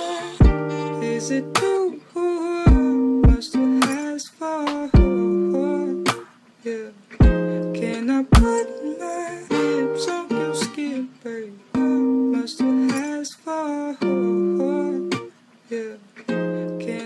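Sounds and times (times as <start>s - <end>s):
plucked-string tune: 0.0s - 1.9s, 5.0s - 6.2s, 7.2s - 10.9s.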